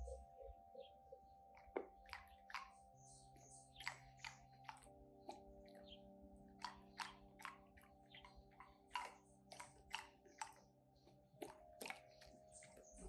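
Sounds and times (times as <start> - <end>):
soft background music: 0.0 - 13.0
dog crunching ice cubes: 3.8 - 5.9, 6.6 - 13.0.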